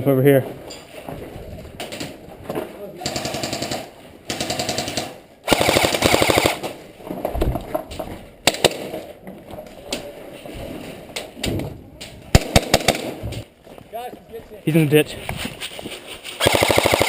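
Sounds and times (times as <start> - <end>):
airsoft gun bursts: 3.0 - 6.6, 16.4 - 17.0.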